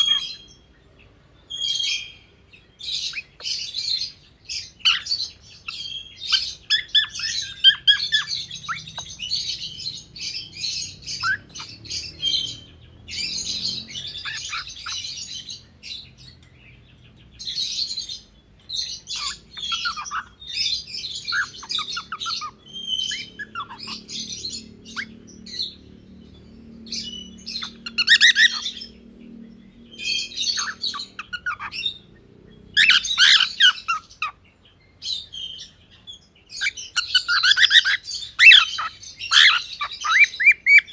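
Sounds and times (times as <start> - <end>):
cockatiel chirping and squawking: 0.0 - 0.6, 2.8 - 16.0, 17.4 - 25.8, 26.9 - 29.0, 30.0 - 32.1, 32.8 - 34.4, 36.5 - 40.9.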